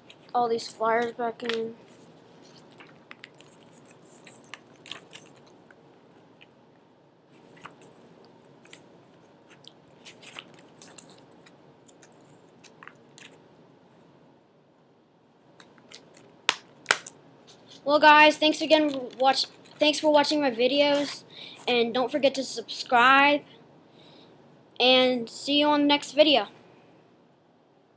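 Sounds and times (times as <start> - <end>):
paper crinkling: 1.0 - 6.6, 7.3 - 13.4, 18.8 - 19.9.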